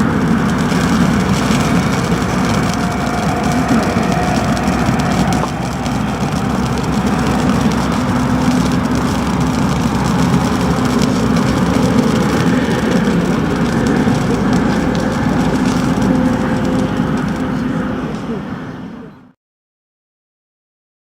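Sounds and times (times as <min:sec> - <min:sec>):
mechanical drone: 0:00.0 - 0:19.4.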